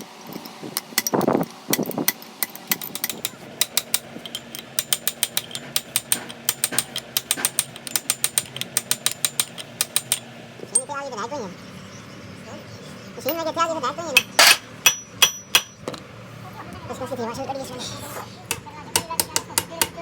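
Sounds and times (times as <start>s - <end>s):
hammer tapping on steel: 0.8s - 10.2s, 14.2s - 16.0s, 18.5s - 20.0s.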